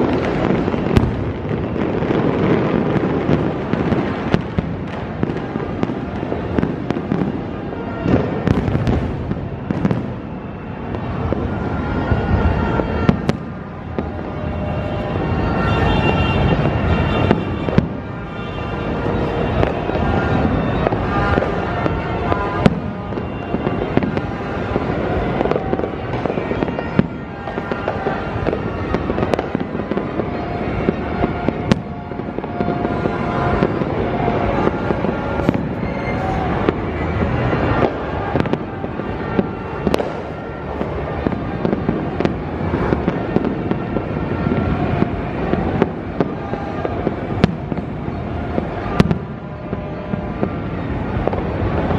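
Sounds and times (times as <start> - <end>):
fireworks crackling and banging: 0.0 - 51.9.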